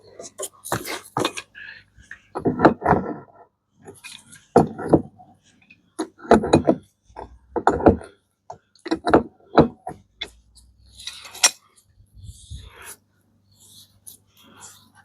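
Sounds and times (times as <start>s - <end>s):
heavy breathing: 0.7s - 2.4s
tools knocking on metal: 6.3s - 6.8s.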